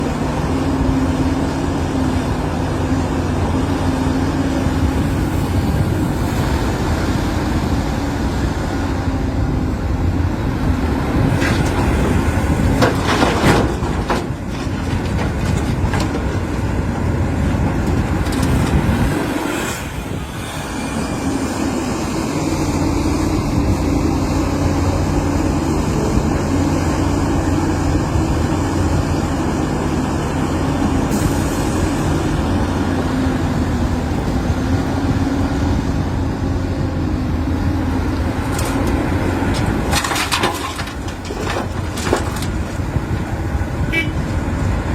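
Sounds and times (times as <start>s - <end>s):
excavator diesel engine running: 0.0s - 44.9s
clatter and knocking: 11.3s - 16.7s, 38.4s - 43.4s.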